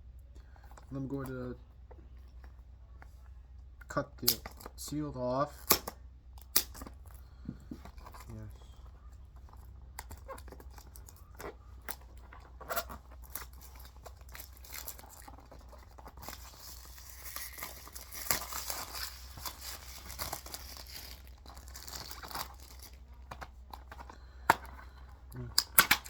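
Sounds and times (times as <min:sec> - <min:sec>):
plastic wrap crinkling and tearing: 0:09.4 - 0:24.3.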